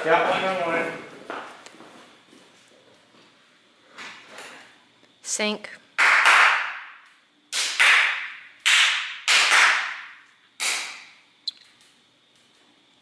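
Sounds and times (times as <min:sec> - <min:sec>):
sharp hand claps: 0:06.0 - 0:11.2.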